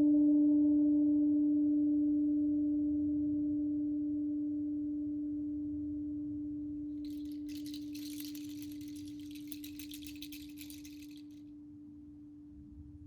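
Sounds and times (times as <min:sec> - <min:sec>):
high rustling noise: 0:07.0 - 0:11.4.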